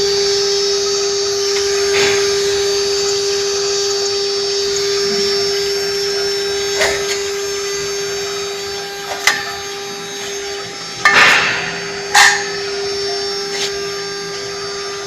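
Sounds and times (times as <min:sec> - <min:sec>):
router spindle whine: 0:00.0 - 0:15.0.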